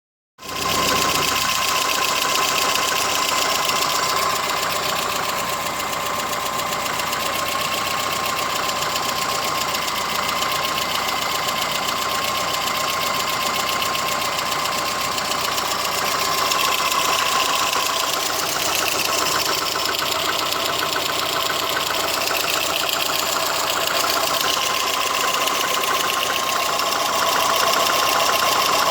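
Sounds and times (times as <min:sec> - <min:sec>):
petrol engine running: 0:00.5 - 0:28.9.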